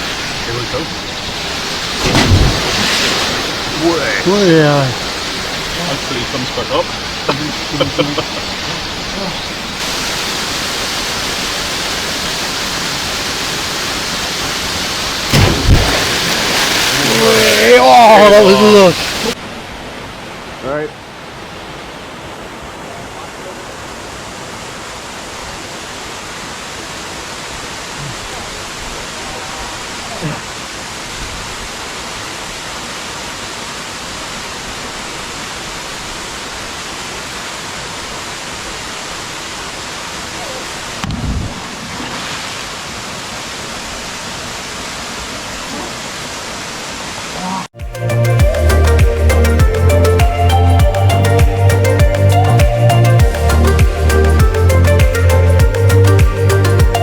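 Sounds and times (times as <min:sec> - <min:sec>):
waterfall roaring: 0:00.0 - 0:47.8
loud low thumps: 0:02.0 - 0:03.5, 0:15.3 - 0:16.9.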